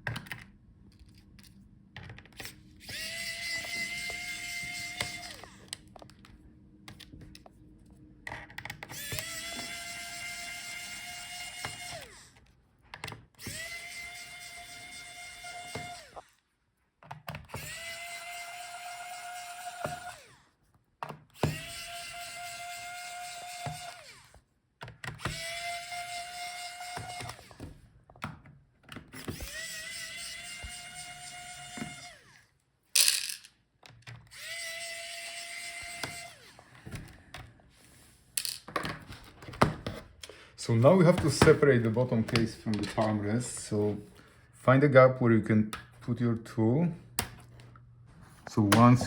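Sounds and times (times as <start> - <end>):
electric screwdriver motor whine: 2.4 - 6.2, 8.8 - 12.4, 13.4 - 16.4, 17.5 - 20.6, 21.4 - 24.4, 25.1 - 27.8, 29.2 - 32.5, 34.2 - 37.2.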